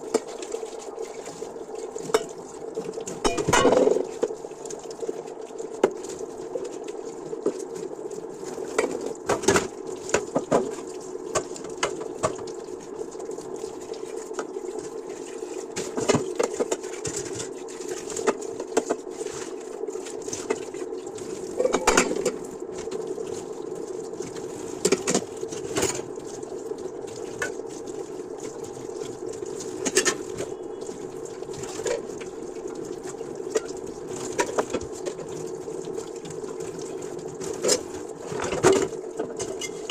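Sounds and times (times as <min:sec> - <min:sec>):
running water: 0:00.0 - 0:39.9
dishes and utensils clinking: 0:39.4 - 0:39.9.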